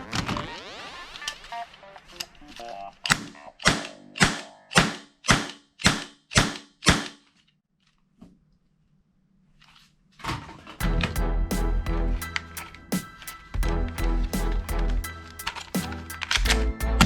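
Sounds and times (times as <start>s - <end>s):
toy gun shots: 3.1s - 7.3s
music: 10.8s - 17.0s.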